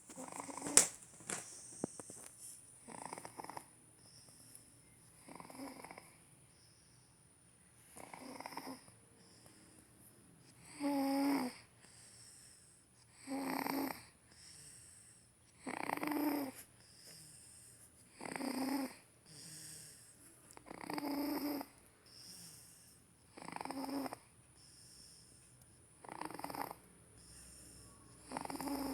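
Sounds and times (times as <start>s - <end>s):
baby snoring: 0.1s - 0.9s, 2.8s - 3.8s, 5.2s - 6.2s, 8.0s - 9.0s, 10.6s - 11.7s, 13.1s - 14.1s, 15.6s - 17.2s, 18.1s - 24.3s, 26.0s - 28.9s
soft baby breaths: 27.1s - 28.9s.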